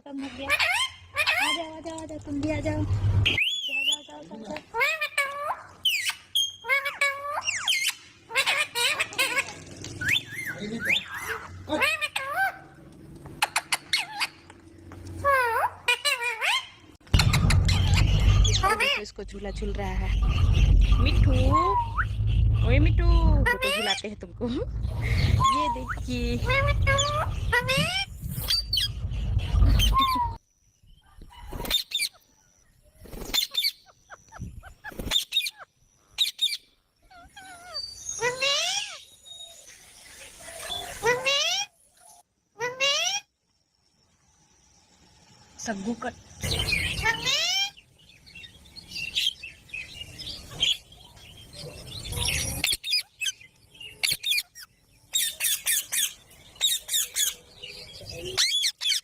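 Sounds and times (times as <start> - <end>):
parrot screeching: 0.4 - 1.6, 4.8 - 12.7, 15.2 - 19.0
parrot chirps: 4.7 - 12.7, 13.4 - 14.5, 33.3 - 39.6, 40.6 - 43.4, 52.0 - 57.4, 58.4 - 59.0
parakeet squawking: 15.2 - 19.1, 20.0 - 24.1, 25.1 - 29.0.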